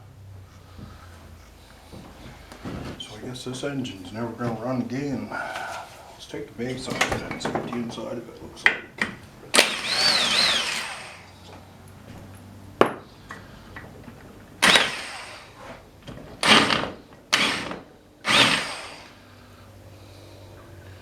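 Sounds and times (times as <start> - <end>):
short noisy tool bursts: 9.6 - 11.3, 14.6 - 15.8, 16.4 - 19.4.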